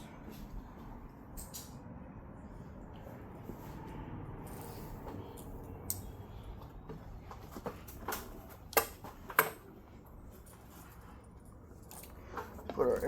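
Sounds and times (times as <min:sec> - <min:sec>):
tools and wood clicking and knocking: 0:05.3 - 0:09.7.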